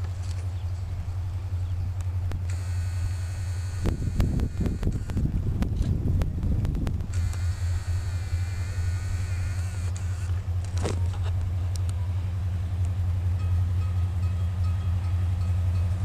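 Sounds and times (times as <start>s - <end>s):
diesel locomotive rumble: 0.0s - 16.0s
faint high-pitched whine: 7.1s - 12.5s.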